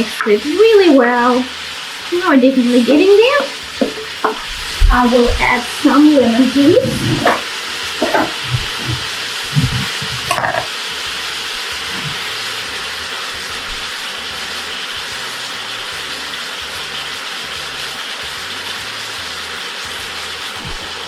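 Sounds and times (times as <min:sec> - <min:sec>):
garlic sizzling in a pot: 0:00.0 - 0:21.0
utensil knocking: 0:03.7 - 0:10.7, 0:11.9 - 0:12.3.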